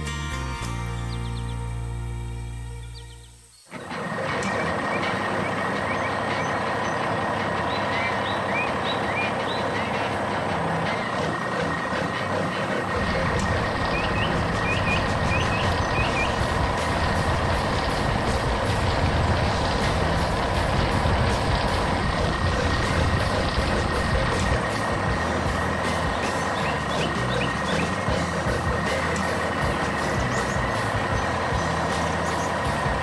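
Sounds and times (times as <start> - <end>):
heavy truck engine rumbling: 0.0 - 33.0
bird chirps: 0.8 - 1.9, 2.7 - 12.3, 13.0 - 18.8, 25.2 - 32.8.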